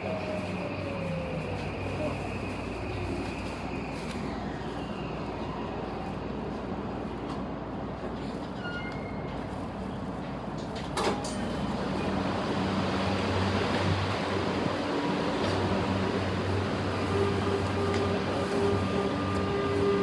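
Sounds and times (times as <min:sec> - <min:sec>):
train running noise: 0:00.0 - 0:20.0.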